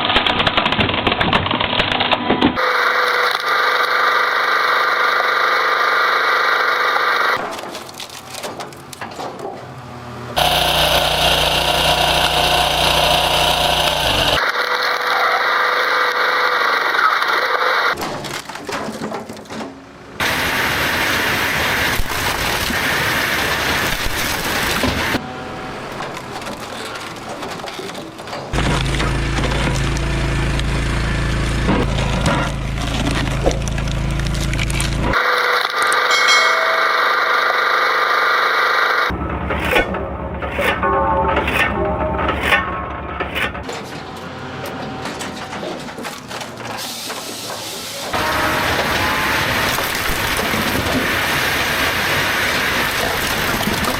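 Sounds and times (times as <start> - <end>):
wood cracking and splintering: 0.0 - 2.6, 7.4 - 9.6, 18.0 - 19.8, 25.9 - 35.9
heavy machinery running: 2.4 - 18.0, 20.2 - 53.9.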